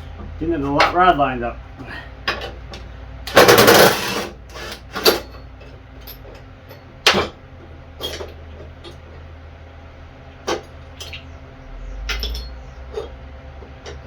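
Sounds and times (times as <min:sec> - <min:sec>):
metal parts clanking: 0:03.3 - 0:05.4, 0:08.0 - 0:08.6, 0:12.0 - 0:13.2.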